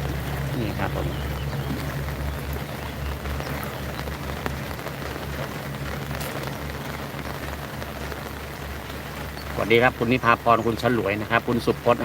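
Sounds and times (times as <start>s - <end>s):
low rumble: 0.0s - 9.6s
rain falling: 0.0s - 12.0s
raindrop ticks: 0.0s - 12.0s.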